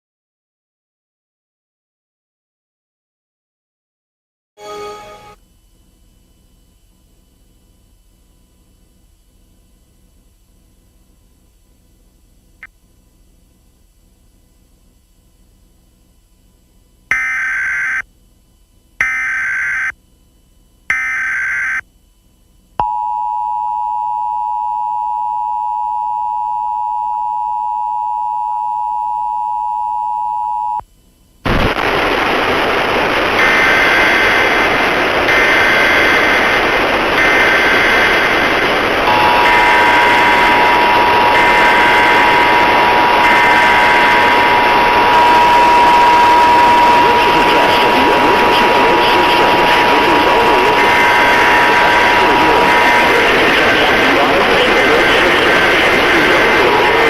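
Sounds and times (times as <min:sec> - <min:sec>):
steady tone: 0:04.6 - 0:05.4, 0:31.4 - 0:57.0
two-tone attention signal: 0:04.6 - 0:05.4, 0:22.8 - 0:30.8, 0:37.2 - 0:57.0
harsh buzzing data bursts: 0:17.1 - 0:18.1, 0:19.0 - 0:20.0, 0:20.9 - 0:21.8, 0:31.4 - 0:57.0
beep switching on and off: 0:19.0 - 0:19.9, 0:20.9 - 0:21.8, 0:22.8 - 0:30.8, 0:35.3 - 0:36.3, 0:37.2 - 0:50.0
loud static: 0:31.4 - 0:57.0.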